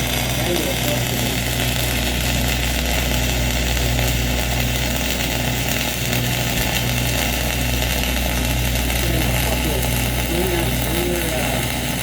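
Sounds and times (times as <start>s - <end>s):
engine humming: 0.0s - 12.0s
welding arc crackling: 0.0s - 12.0s.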